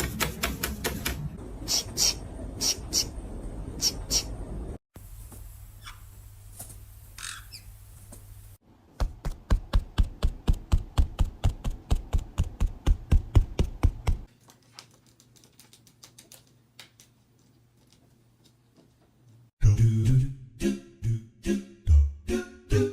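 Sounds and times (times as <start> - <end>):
parrot squawk: 7.2 - 7.6.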